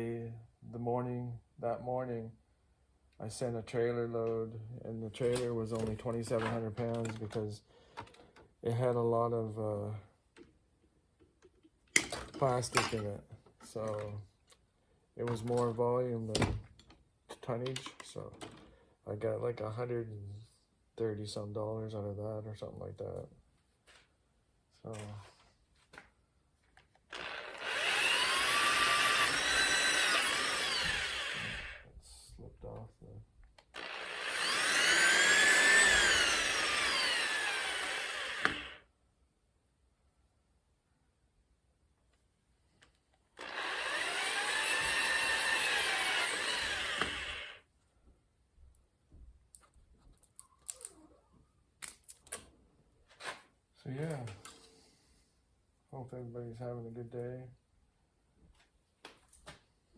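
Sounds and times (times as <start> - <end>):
electric power tool whining: 27.1 - 31.8, 33.6 - 38.8, 43.4 - 47.6.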